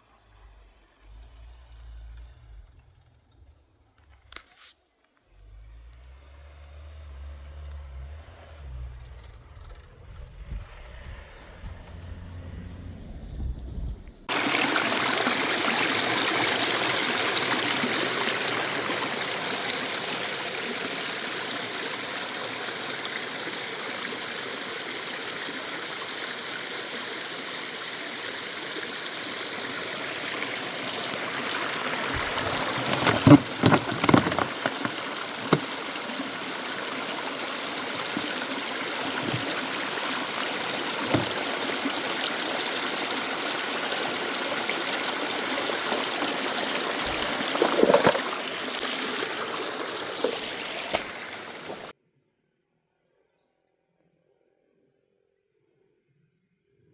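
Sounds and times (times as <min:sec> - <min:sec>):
running water flowing: 0:14.3 - 0:51.9.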